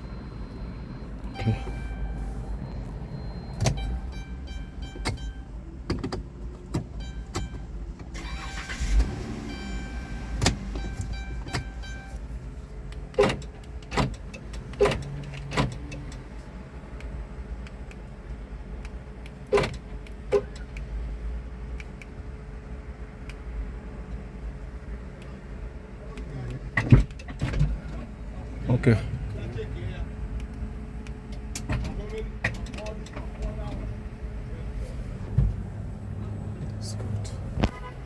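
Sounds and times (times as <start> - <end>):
low steady hum: 0.0 - 13.2
minivan clicks and clunks: 0.0 - 38.0.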